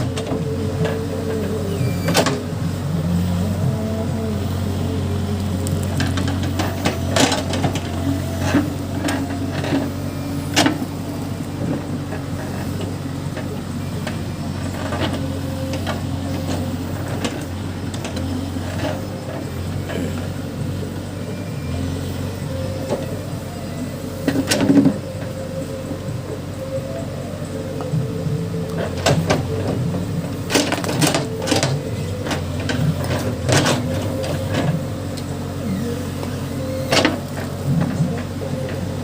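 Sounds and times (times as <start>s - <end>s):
diesel engine running: 0.0s - 39.0s.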